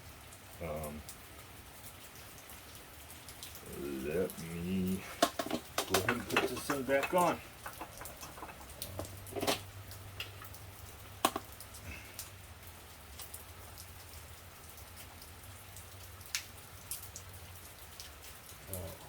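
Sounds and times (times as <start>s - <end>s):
steady rain falling: 0.0s - 19.0s
brake parts clicking and knocking: 5.1s - 10.3s, 11.2s - 11.5s.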